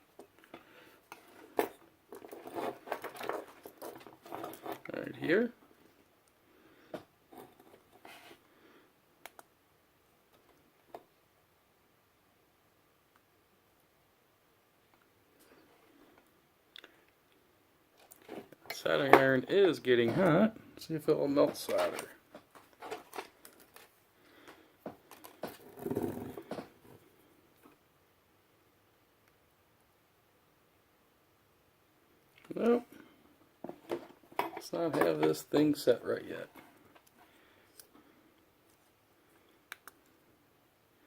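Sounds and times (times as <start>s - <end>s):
taps and clicks of soldering tools: 9.2s - 9.5s.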